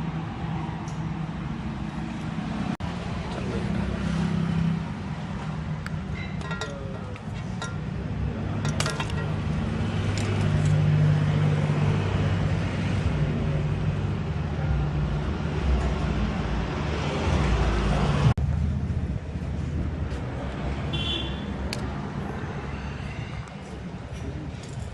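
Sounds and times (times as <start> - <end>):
motor vehicle engine: 0.0 - 20.9
road traffic noise: 0.0 - 24.9.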